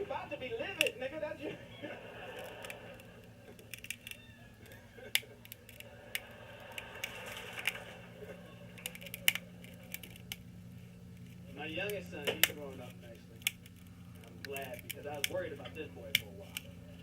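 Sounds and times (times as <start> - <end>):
steady low hum: 0.0 - 17.0
small tools clicking and tapping: 2.4 - 7.8, 8.7 - 10.5, 11.1 - 17.0.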